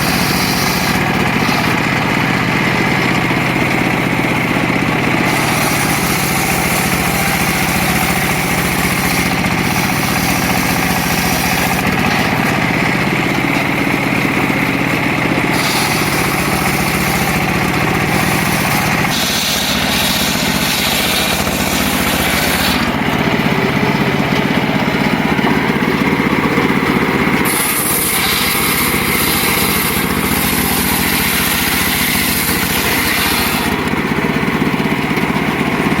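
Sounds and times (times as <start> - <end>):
circular saw cutting wood: 0.0 - 36.0.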